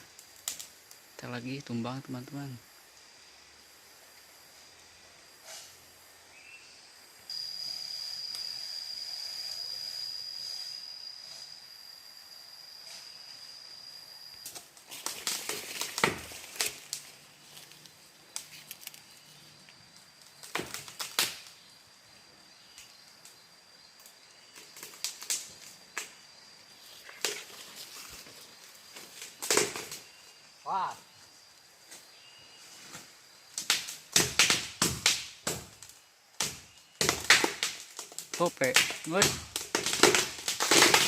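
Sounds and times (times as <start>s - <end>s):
high insect drone: 0.0s - 41.0s
tree cracking and snapping: 14.5s - 19.2s, 20.2s - 21.6s, 24.5s - 26.1s, 28.9s - 30.1s, 33.5s - 41.0s.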